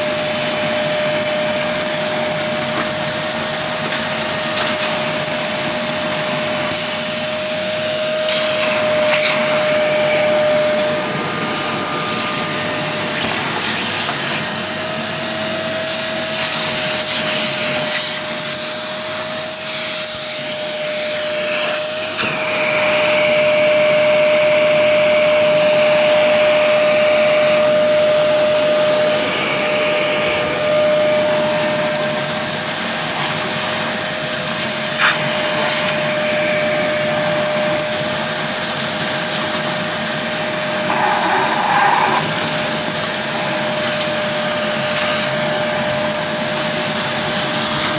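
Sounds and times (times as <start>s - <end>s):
workshop vacuum running: 0.0s - 47.9s.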